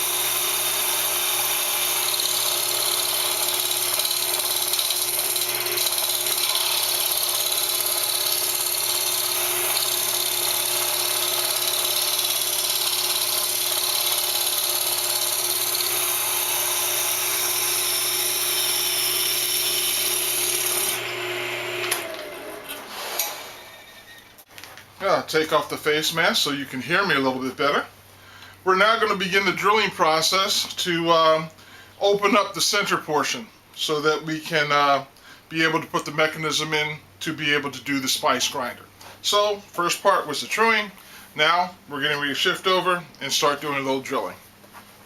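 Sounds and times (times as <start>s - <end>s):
lathe motor hum: 0.0s - 23.3s.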